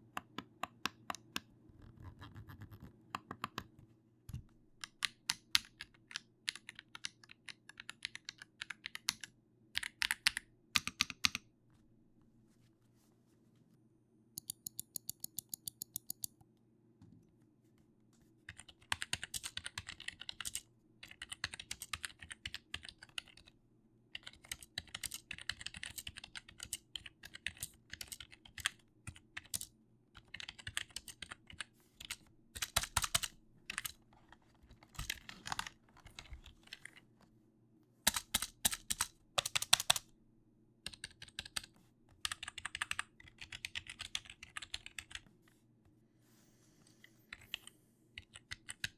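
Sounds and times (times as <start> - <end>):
typing on computer keyboard: 4.8 - 11.4, 14.4 - 16.4, 18.5 - 23.5, 24.2 - 34.0, 38.1 - 40.1, 40.9 - 45.2, 47.3 - 48.9.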